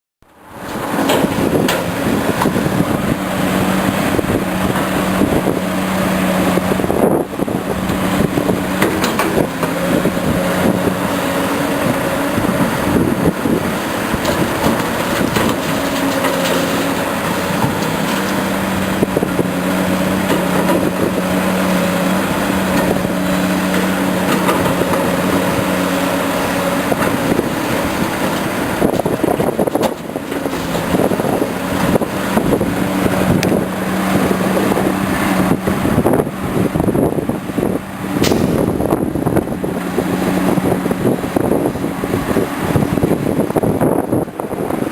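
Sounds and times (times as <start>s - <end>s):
excavator engine running: 0.3s - 44.9s
knocks and clatter: 0.7s - 2.6s, 8.7s - 9.8s, 14.2s - 18.5s, 38.2s - 39.2s.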